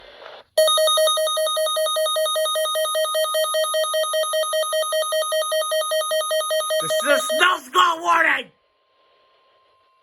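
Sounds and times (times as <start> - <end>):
rapidly pulsing alert beep: 0.6 - 7.6.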